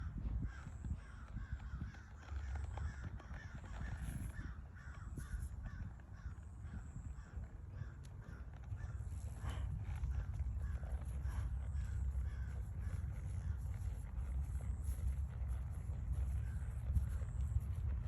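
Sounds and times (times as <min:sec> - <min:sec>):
steady low rumble: 0:05.0 - 0:18.0
birds calling: 0:07.8 - 0:14.9.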